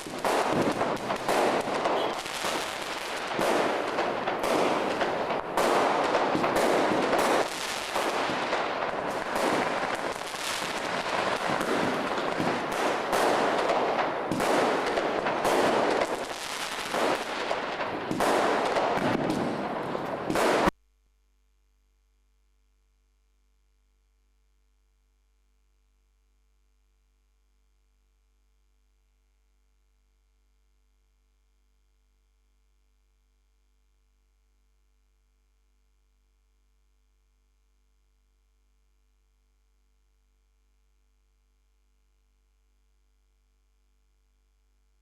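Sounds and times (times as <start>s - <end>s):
fireworks banging and crackling: 0.0s - 20.7s.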